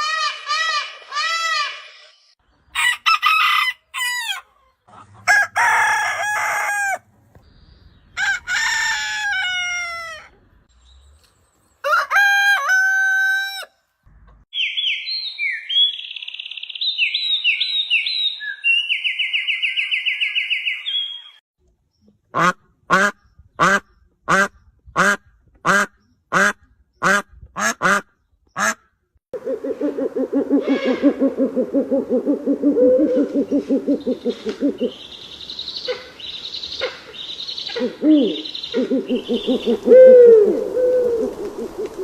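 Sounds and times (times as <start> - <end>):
rooster crowing: 2.8 - 4.5, 5.2 - 7.1, 8.2 - 10.4, 11.8 - 13.8
hens clucking: 3.9 - 5.7.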